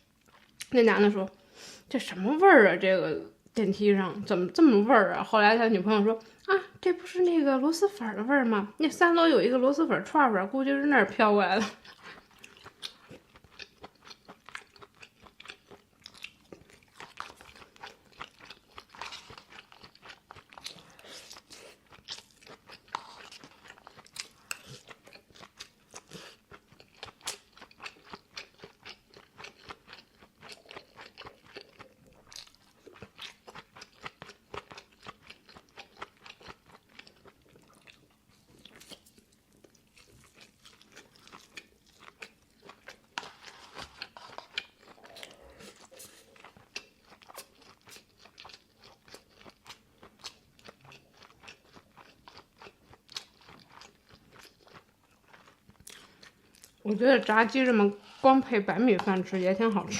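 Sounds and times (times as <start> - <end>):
chewing crunchy fried chicken: 0.1 - 0.7, 11.6 - 57.4.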